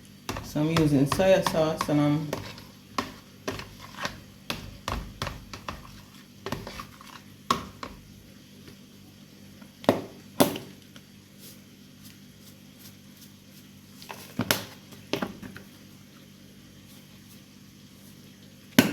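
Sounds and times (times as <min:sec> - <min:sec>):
utensil knocking against a bowl: 0:00.3 - 0:05.9.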